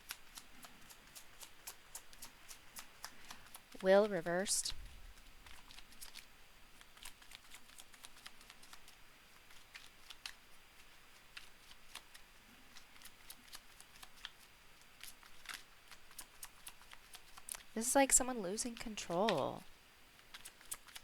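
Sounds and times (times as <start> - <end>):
cards being shuffled: 5.2 - 17.7, 20.2 - 21.0.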